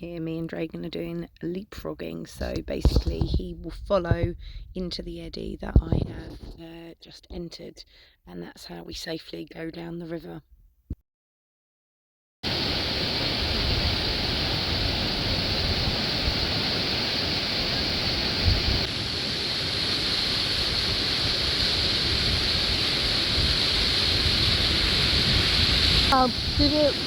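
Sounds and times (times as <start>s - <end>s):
wind rumble on microphone: 2.4s - 6.7s, 12.5s - 27.0s
rapids rushing: 12.5s - 27.0s.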